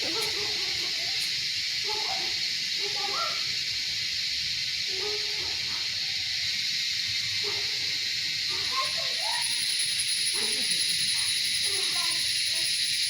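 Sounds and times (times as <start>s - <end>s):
faint distant voices: 0.0s - 3.6s, 8.4s - 13.0s
insects chorus: 0.0s - 13.0s.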